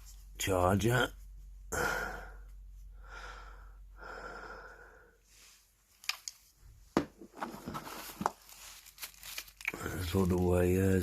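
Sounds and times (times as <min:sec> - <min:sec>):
person breathing: 0:01.7 - 0:05.8
sharp clicks of handling: 0:06.0 - 0:06.4.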